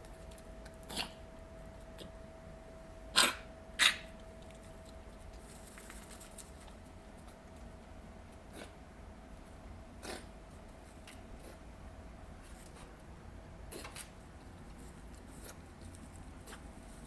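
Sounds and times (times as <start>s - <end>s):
puppy coughing: 0.8s - 1.2s, 3.1s - 4.1s, 10.0s - 10.3s.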